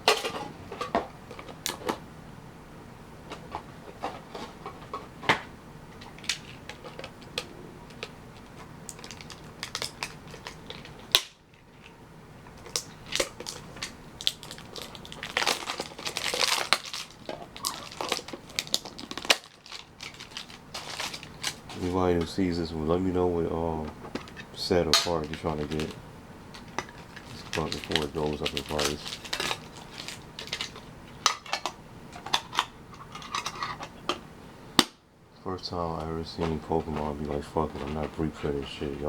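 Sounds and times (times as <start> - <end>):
foil wrappers crinkling and tearing: 6.0 - 22.3, 24.3 - 26.0, 26.6 - 31.6.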